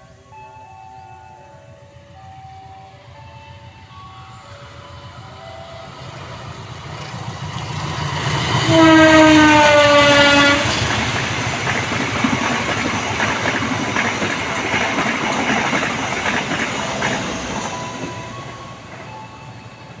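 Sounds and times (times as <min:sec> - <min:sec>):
train rumble: 0:00.0 - 0:20.0
wheels clacking over rail joints: 0:04.9 - 0:19.9
locomotive horn blast: 0:08.5 - 0:10.8.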